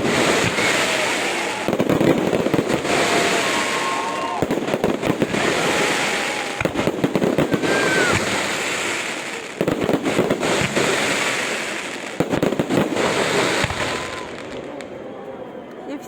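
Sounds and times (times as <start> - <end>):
fireworks bangs and crackling: 0.0 - 15.0.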